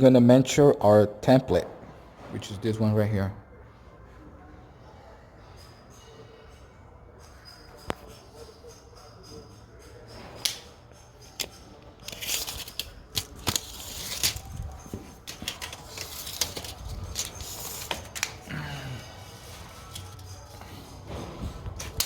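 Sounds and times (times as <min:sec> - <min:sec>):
paper rustling: 0:12.0 - 0:18.4.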